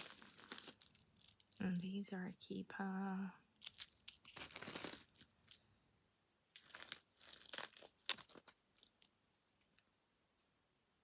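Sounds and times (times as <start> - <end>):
beads and chains clicking: 0.0 - 1.9, 3.6 - 5.2, 6.6 - 9.1.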